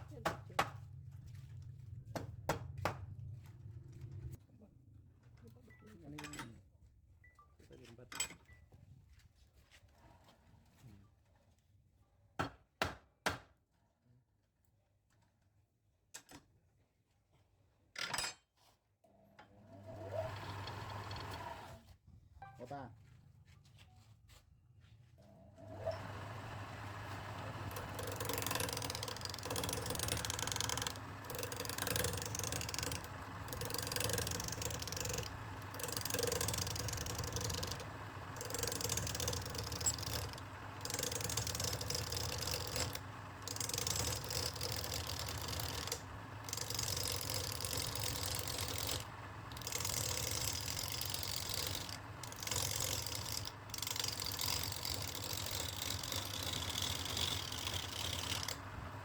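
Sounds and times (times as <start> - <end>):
lathe motor hum: 19.8 - 21.8, 25.6 - 59.0
turning tool cutting wood: 19.8 - 21.8, 25.6 - 59.0.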